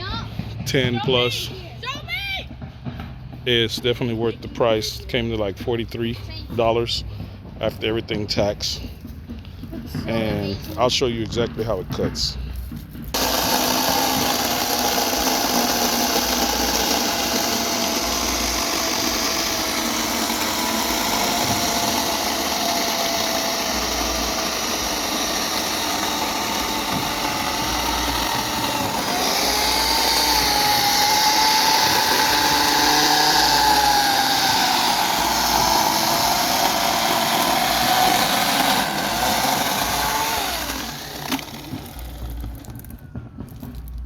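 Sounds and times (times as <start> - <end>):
electric chainsaw whine: 13.0 - 43.8.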